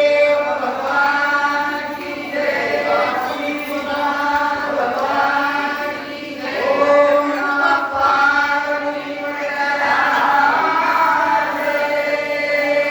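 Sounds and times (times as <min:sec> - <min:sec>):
group singing devotional song: 0:00.0 - 0:12.9.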